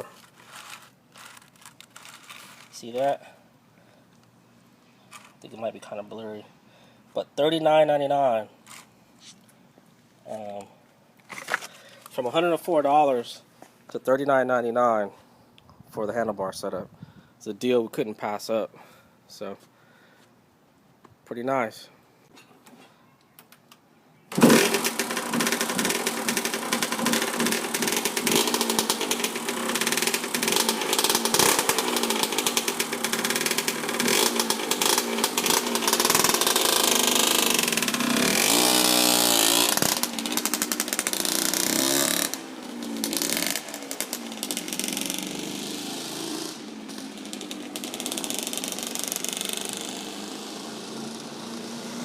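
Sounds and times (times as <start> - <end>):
motorcycle engine revving and idling: 24.3 - 52.0.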